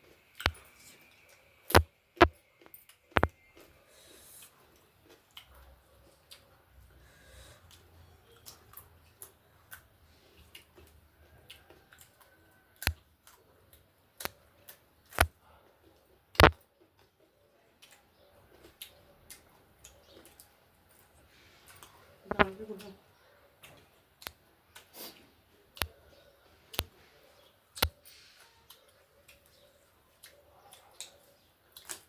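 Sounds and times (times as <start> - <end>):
chewing and mouth noises: 0.2 - 32.0
sharp clicks: 1.7 - 2.3, 16.4 - 16.6.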